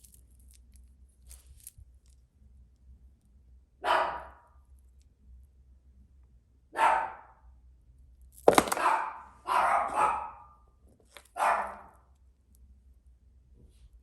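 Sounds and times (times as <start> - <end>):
dog barking: 3.8 - 4.5, 6.7 - 7.4, 8.7 - 10.6, 11.4 - 12.0.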